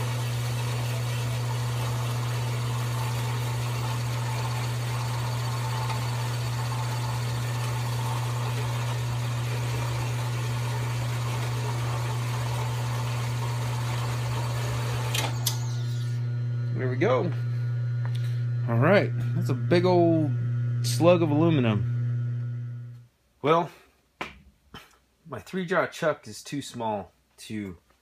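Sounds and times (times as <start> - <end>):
power saw cutting metal: 0.0 - 16.3.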